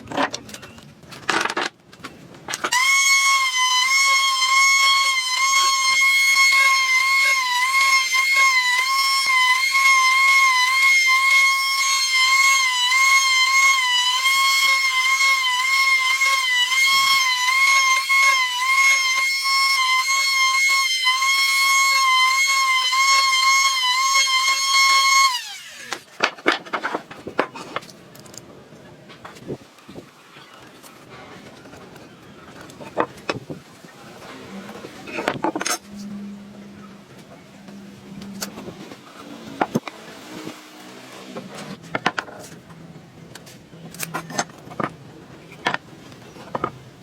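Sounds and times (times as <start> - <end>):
power tool whining: 2.7 - 26.0.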